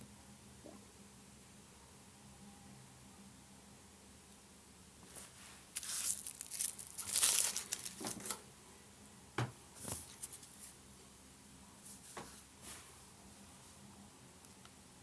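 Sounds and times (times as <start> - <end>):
packaging crinkling: 5.8 - 8.4.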